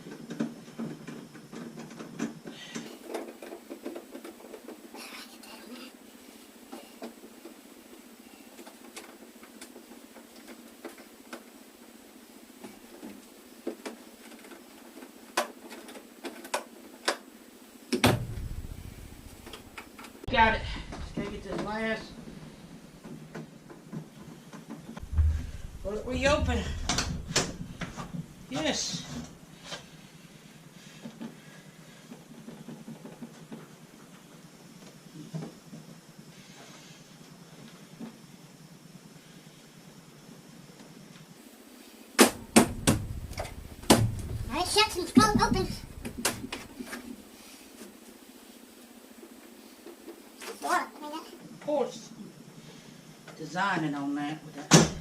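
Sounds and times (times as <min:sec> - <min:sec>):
low steady hum: 0:18.0 - 0:32.1, 0:42.2 - 0:47.4.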